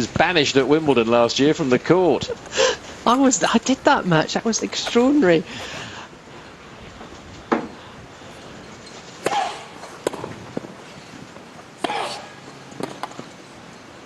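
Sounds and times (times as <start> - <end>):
tennis ball bouncing: 4.5 - 5.8, 9.2 - 10.9, 11.8 - 13.3
racket striking tennis ball: 4.7 - 5.7, 9.2 - 10.8, 11.8 - 13.2.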